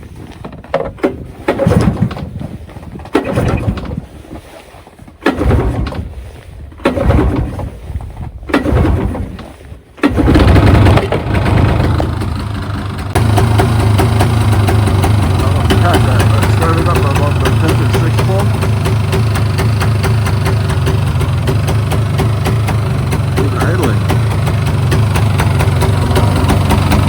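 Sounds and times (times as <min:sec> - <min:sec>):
two-stroke engine running roughly: 0:10.1 - 0:27.0.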